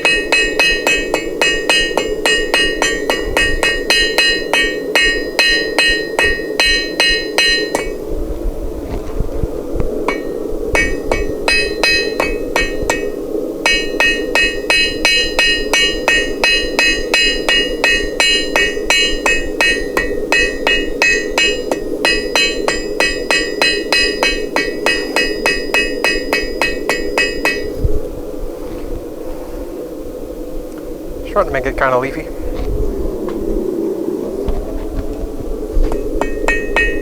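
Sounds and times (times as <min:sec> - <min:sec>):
hammer striking steel on anvil: 0:00.0 - 0:08.0, 0:10.1 - 0:27.9, 0:35.9 - 0:37.0
steady hum: 0:00.0 - 0:37.0.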